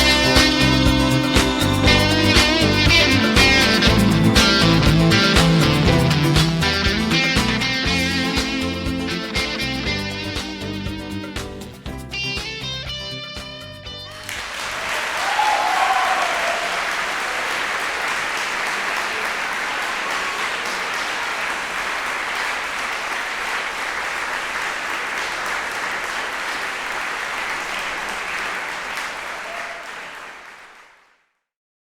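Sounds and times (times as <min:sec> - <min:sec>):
crowd cheering: 0:00.0 - 0:08.4, 0:14.1 - 0:31.2
crowd applause: 0:00.0 - 0:10.8, 0:14.1 - 0:31.2.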